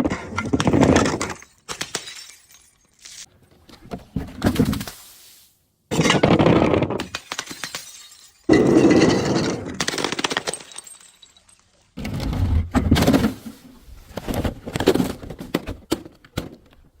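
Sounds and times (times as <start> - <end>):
glass smashing and crunching: 0.5 - 3.3, 5.9 - 12.0.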